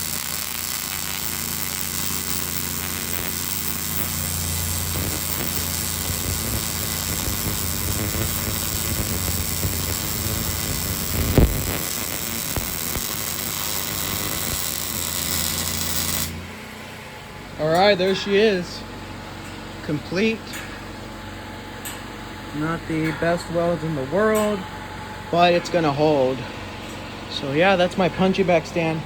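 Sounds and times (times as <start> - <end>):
welding arc crackling hiss: 0.0 - 16.4
welder electrical hum: 0.0 - 29.0.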